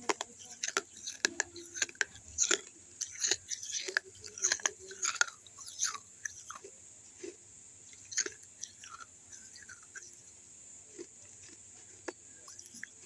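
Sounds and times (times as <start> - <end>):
crunching clay cup pieces: 0.0 - 6.7.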